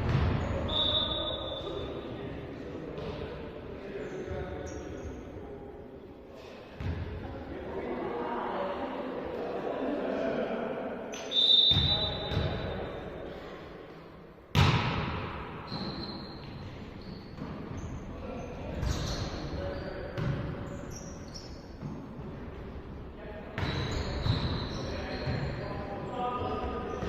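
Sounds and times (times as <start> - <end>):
players' voices: 0.4 - 14.2, 18.0 - 27.0
volleyball hits: 14.5 - 16.6
sneakers squeaking on court: 15.7 - 22.1, 23.6 - 25.8.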